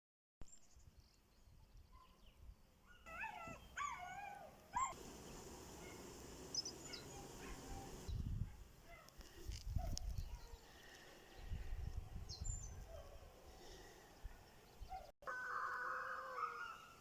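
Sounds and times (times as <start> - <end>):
faint outdoor background: 0.4 - 17.0.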